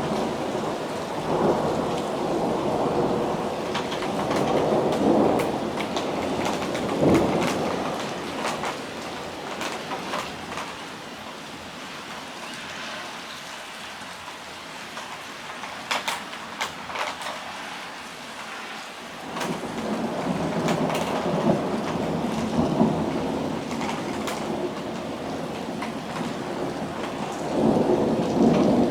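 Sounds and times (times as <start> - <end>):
rolling thunder rumble: 0.0 - 10.8, 19.2 - 28.9
steady rain hiss: 0.0 - 28.9.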